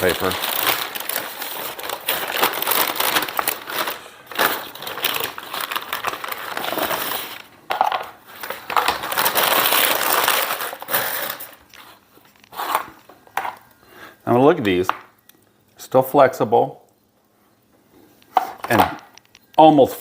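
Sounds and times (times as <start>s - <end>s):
paper being crumpled: 0.0s - 7.5s, 8.3s - 12.9s.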